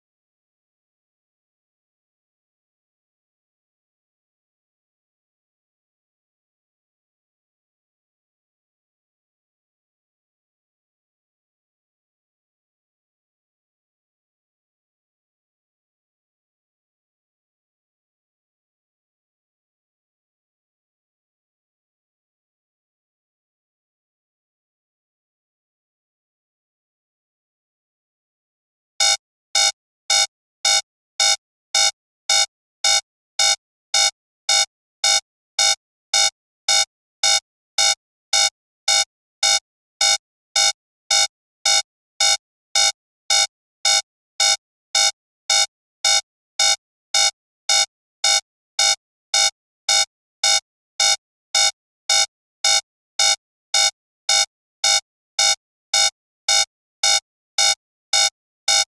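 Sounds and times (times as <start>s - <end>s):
alarm clock beeping: 29.0s - 58.9s.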